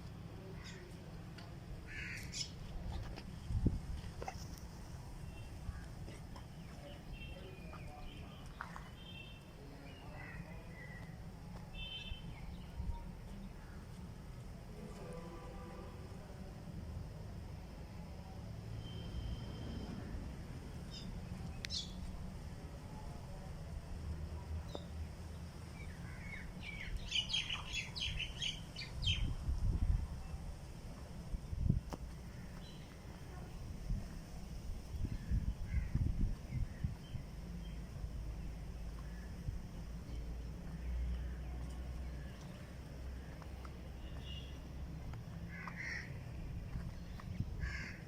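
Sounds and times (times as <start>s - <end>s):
small birds chirping: 25.8s - 29.3s, 35.0s - 44.7s.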